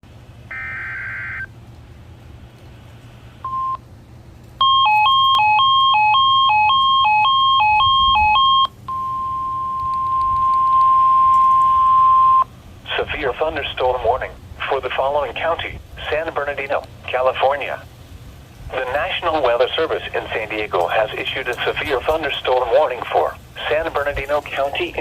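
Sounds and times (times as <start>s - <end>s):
steady warning alarm tone: 0.5s - 1.5s, 4.6s - 12.5s.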